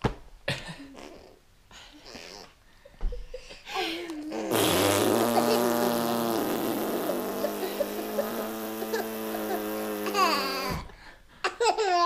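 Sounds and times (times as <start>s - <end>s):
person making buzzing noise: 4.3s - 10.8s
laughter: 7.0s - 8.5s.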